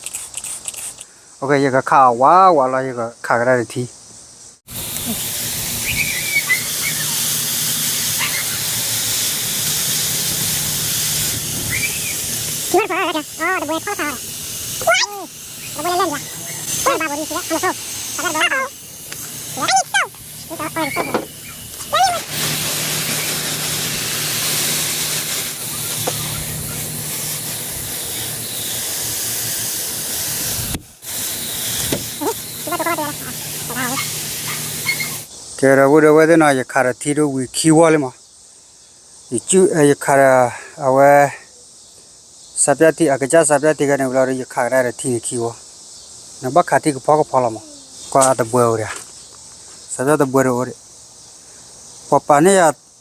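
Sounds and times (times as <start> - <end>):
spray hissing: 0.0 - 1.0, 4.7 - 35.3.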